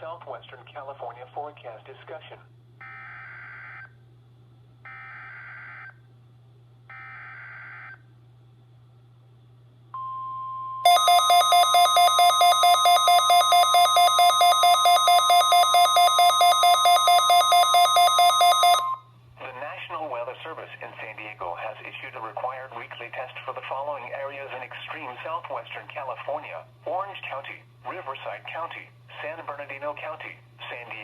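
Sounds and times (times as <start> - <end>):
pulsing electronic alarm beeps: 10.0 - 19.0.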